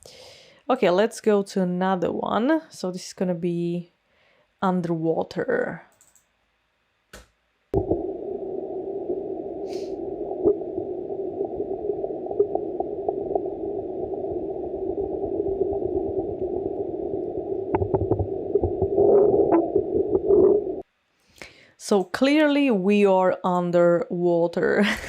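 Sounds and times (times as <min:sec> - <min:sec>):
clicks and pops: 0:07.1 - 0:20.8
muffled gurgling underwater wash: 0:07.8 - 0:20.8.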